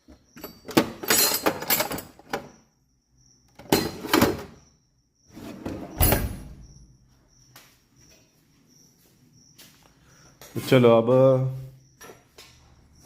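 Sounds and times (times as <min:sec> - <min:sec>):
tool drawer scraping and rattling: 0:00.4 - 0:02.5, 0:05.3 - 0:06.5.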